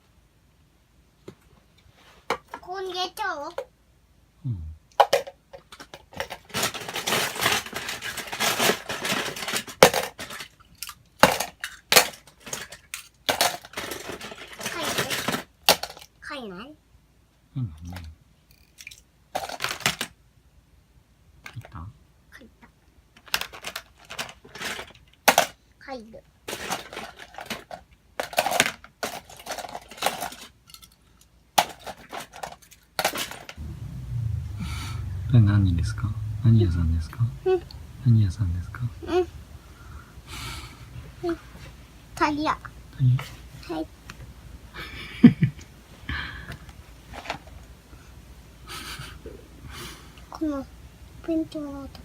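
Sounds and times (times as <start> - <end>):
small toys clattering: 5.0 - 16.2, 18.0 - 20.2, 23.1 - 25.6, 26.4 - 33.6.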